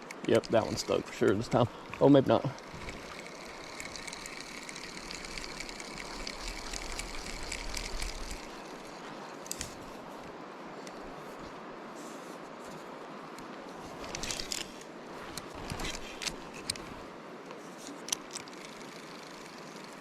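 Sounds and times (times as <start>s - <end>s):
reel click: 0.0s - 11.0s, 13.3s - 20.0s
shallow river rushing: 0.0s - 12.0s
fishing reel whirring: 2.5s - 10.0s, 18.0s - 20.0s.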